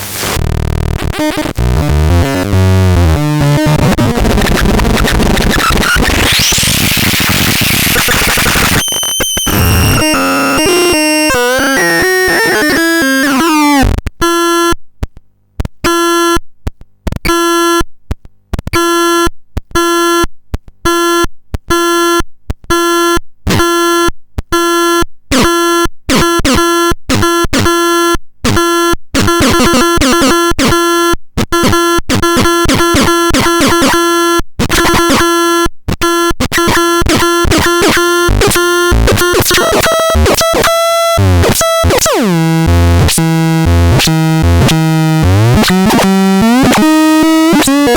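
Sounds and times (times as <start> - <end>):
harsh buzzy stuttering tone: 0.0 - 14.0, 31.4 - 47.9.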